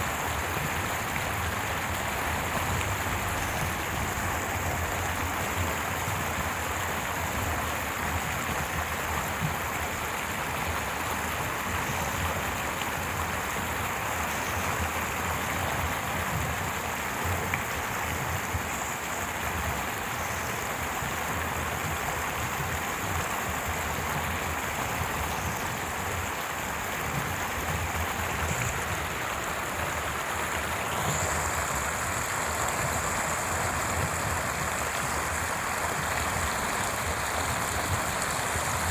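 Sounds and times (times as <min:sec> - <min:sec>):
stream water running over stones: 0:00.0 - 0:38.9.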